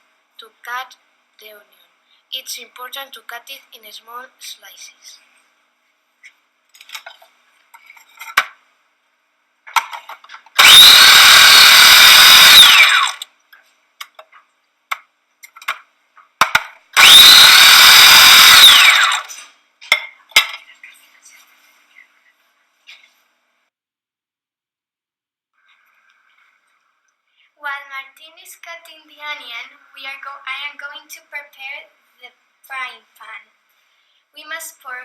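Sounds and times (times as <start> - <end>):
food chopper motor whine: 10.6 - 13.3, 17.0 - 19.4.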